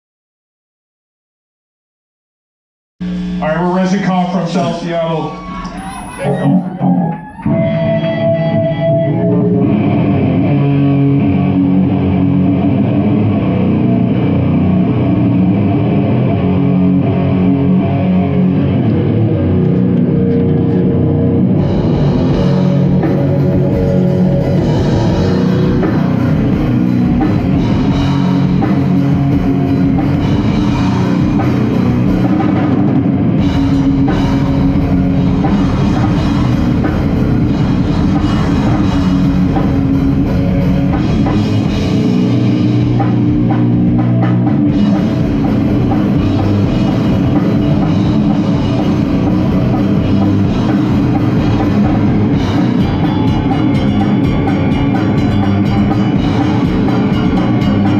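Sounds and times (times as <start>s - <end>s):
drum kit and cymbals: 3.0s - 7.1s, 19.5s - 57.9s
heavy guitar and bass riff: 3.0s - 57.9s.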